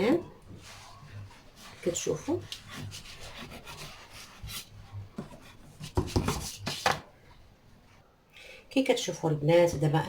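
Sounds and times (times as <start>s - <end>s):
knife sawing through cake: 1.8s - 4.7s.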